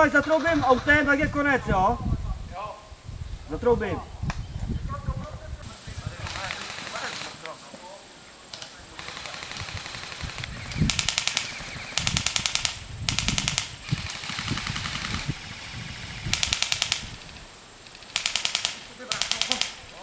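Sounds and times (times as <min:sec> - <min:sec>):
airsoft guns firing bursts: 0:06.1 - 0:07.5, 0:08.9 - 0:17.2, 0:18.0 - 0:20.0.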